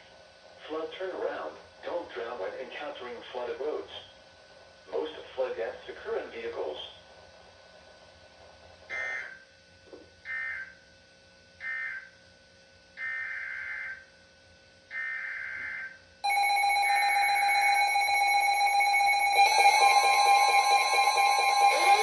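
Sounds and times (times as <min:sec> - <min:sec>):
steady multi-tone alert tone: 0:16.2 - 0:22.0
buzzy warbling data bursts: 0:17.0 - 0:22.0.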